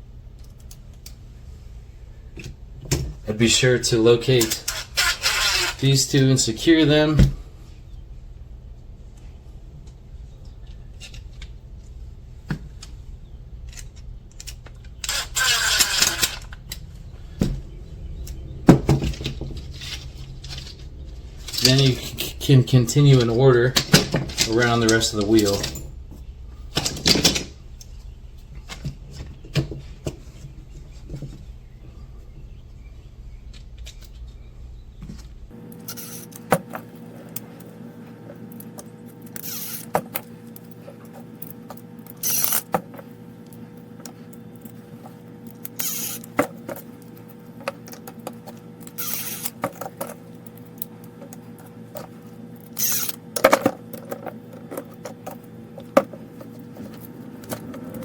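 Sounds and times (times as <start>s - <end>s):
parts clicking and clattering: 4.0s - 6.3s, 9.8s - 28.0s, 35.1s - 58.0s.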